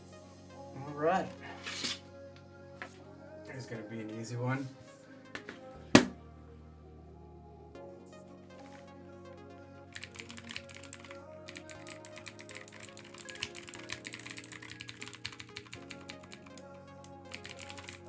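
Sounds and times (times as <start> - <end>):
background music: 0.0 - 18.0
fast typing on clicky keyboard: 10.0 - 18.0.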